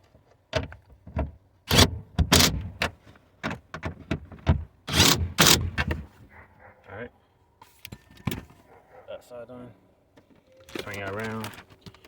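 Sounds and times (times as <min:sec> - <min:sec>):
cordless impact driver bursts: 0:04.9 - 0:05.8.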